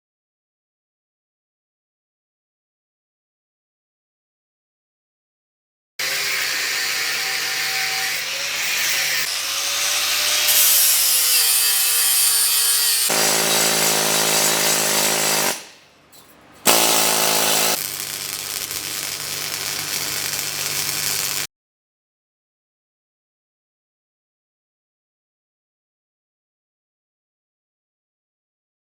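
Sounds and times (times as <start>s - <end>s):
power tools working on metal: 6.0s - 15.8s, 16.7s - 21.5s.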